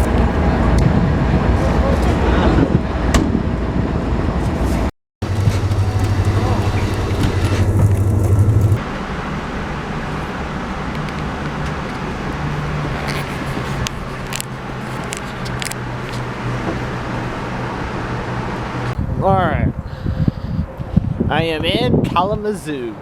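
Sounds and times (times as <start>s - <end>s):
vehicle rumble: 0.0s - 19.2s
loud low hum: 5.2s - 10.8s.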